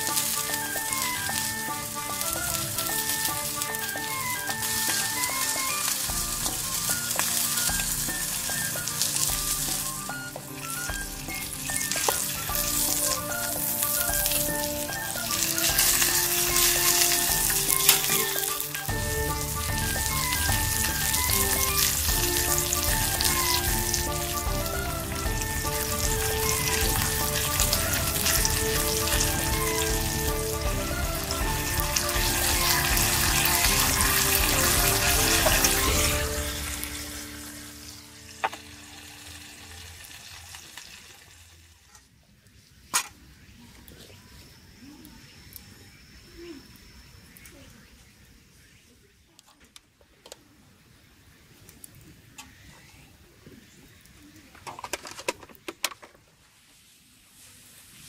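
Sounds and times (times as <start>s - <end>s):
background music melody: 0.0s - 40.6s
crackling hiss: 0.0s - 49.1s, 50.2s - 58.0s.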